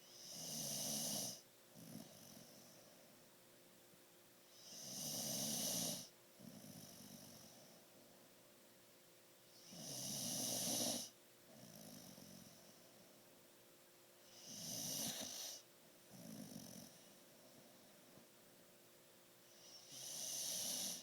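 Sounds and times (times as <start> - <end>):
pet snoring: 0.0 - 2.9, 4.5 - 7.8, 9.6 - 12.8, 14.2 - 17.5, 19.5 - 21.0.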